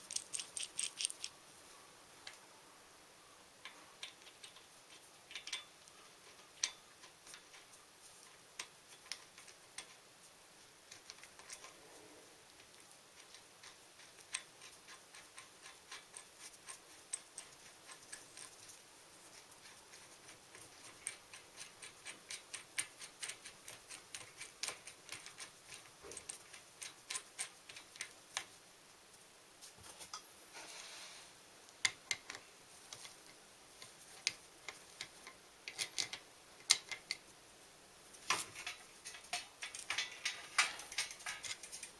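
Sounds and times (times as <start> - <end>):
metallic clicks of bicycle parts: 3.6 - 7.6, 38.3 - 41.9.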